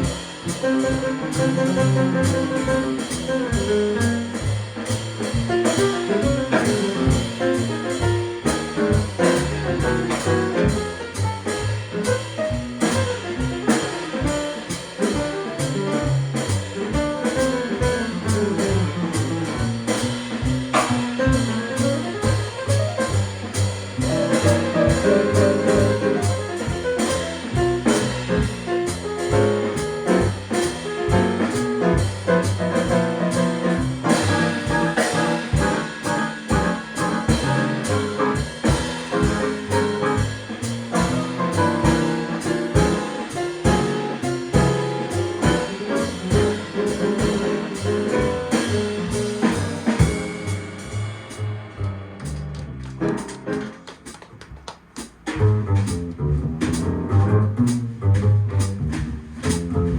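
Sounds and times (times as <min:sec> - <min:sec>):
steady drum beat: 0:00.0 - 0:59.9
low bass line: 0:46.4 - 0:53.2, 0:55.4 - 0:59.9.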